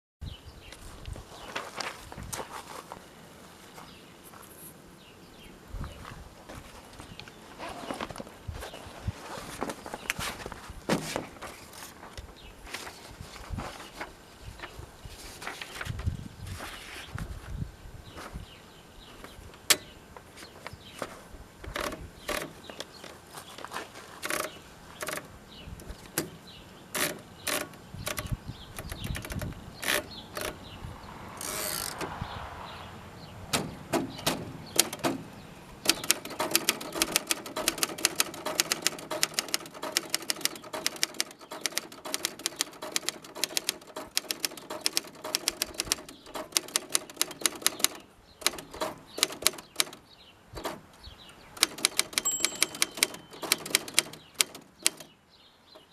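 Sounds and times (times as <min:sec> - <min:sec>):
typewriter key clacks: 0:27.0 - 0:30.6, 0:33.6 - 0:35.2, 0:35.9 - 0:50.0, 0:51.6 - 0:55.1.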